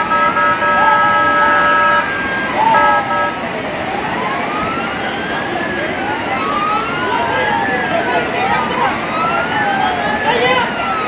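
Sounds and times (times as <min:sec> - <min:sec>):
car horn: 0:00.0 - 0:03.5
siren wailing: 0:00.0 - 0:11.0
street noise: 0:00.0 - 0:11.0
water noise: 0:00.0 - 0:11.0.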